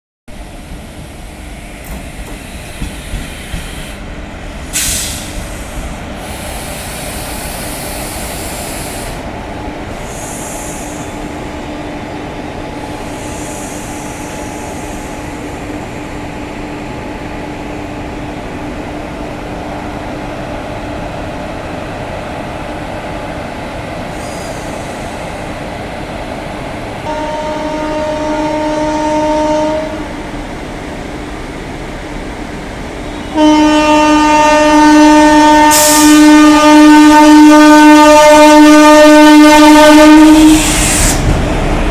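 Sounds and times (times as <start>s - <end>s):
train wheels rumbling on rails: 0.3s - 41.9s
short hisses: 4.7s - 9.3s, 9.9s - 11.3s, 13.0s - 15.3s, 40.5s - 41.3s.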